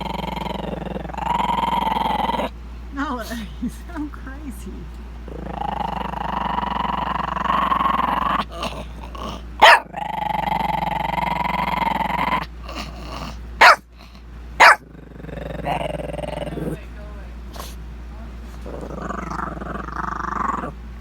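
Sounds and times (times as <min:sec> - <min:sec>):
puppy growling: 0:00.0 - 0:02.6, 0:05.2 - 0:16.9, 0:18.4 - 0:20.8
puppy barking: 0:09.6 - 0:10.0, 0:13.6 - 0:13.9, 0:14.6 - 0:14.8.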